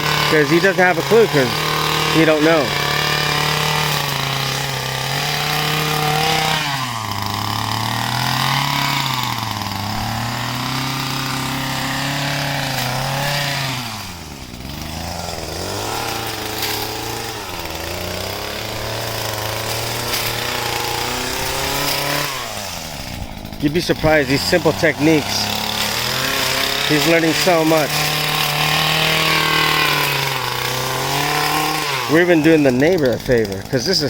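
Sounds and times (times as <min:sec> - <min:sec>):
small two-stroke engine revving: 0:00.0 - 0:34.0.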